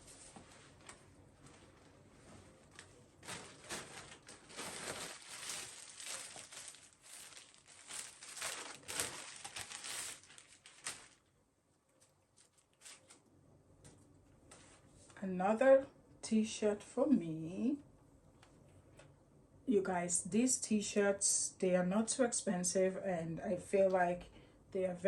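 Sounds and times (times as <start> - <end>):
packaging crinkling and rustling: 0.0 - 11.3, 12.0 - 13.2
packaging tearing: 3.2 - 11.2.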